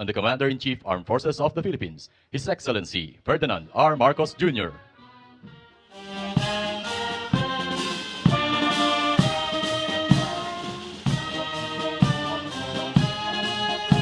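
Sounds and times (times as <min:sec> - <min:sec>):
brass band playing: 0:04.9 - 0:14.0.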